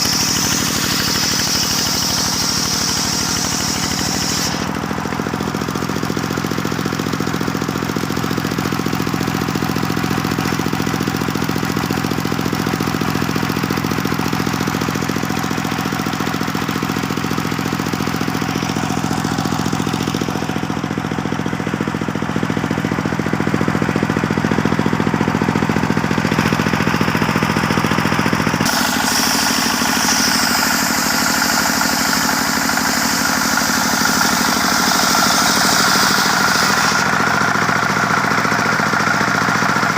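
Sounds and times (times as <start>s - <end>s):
high mechanical whine: 0.0s - 5.4s, 28.5s - 37.6s
circular sawmill humming: 0.0s - 7.0s, 23.2s - 39.9s.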